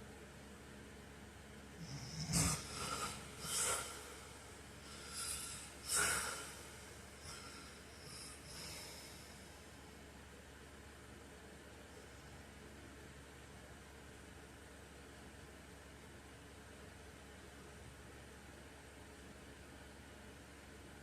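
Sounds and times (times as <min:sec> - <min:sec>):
sleeping man snorting: 0:01.8 - 0:09.5.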